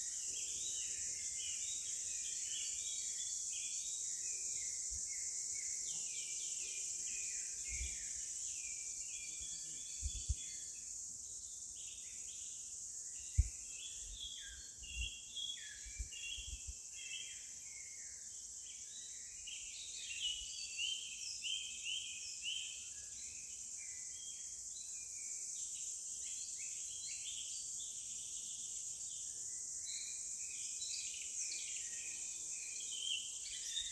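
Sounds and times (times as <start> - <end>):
high insect drone: 0.0 - 33.9.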